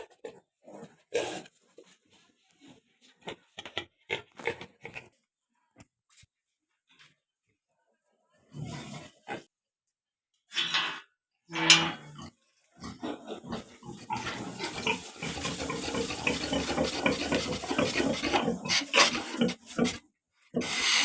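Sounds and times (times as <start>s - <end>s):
pigs crying loudly: 12.8s - 20.0s
overlapping pig noise: 13.0s - 20.0s.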